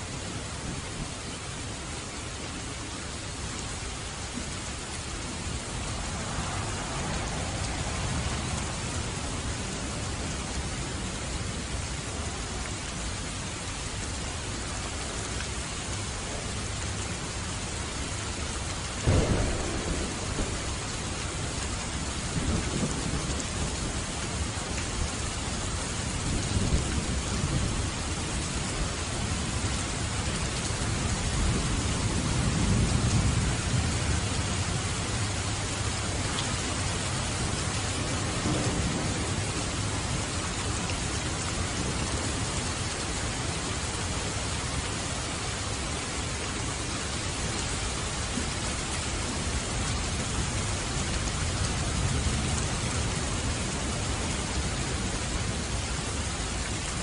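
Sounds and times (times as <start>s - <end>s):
steady rain: 0.0s - 57.0s
rolling thunder rumbles: 4.6s - 10.8s, 18.9s - 35.3s, 36.8s - 43.8s
sharp thunderclap: 19.0s - 23.7s.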